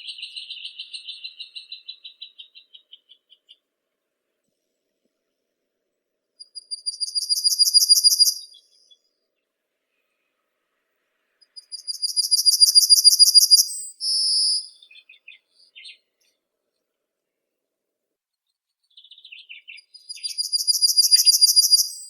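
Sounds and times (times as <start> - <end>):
songbird trilling: 6.4 - 8.9, 11.5 - 16.0, 19.0 - 22.0.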